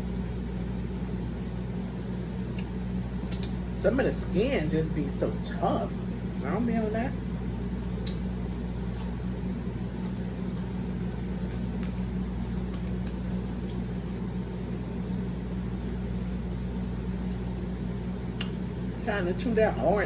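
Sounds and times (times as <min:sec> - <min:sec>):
appliance humming: 0:00.0 - 0:20.0
person chewing: 0:07.9 - 0:14.3.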